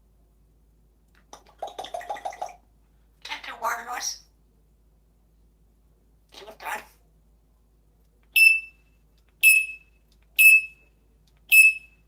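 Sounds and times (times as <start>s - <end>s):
parrot mimicking alarm beeps: 11.5s - 11.9s.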